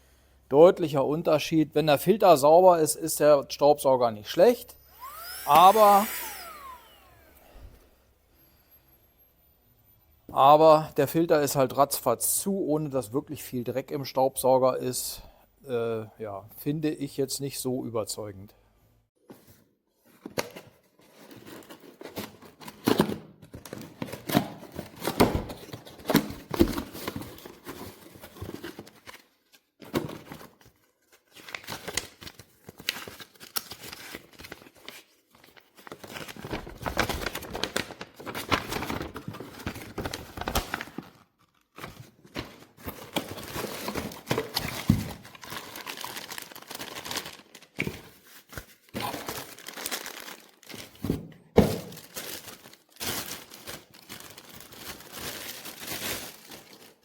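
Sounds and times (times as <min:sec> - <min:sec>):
crinkling and rustling: 0:19.2 - 0:57.0.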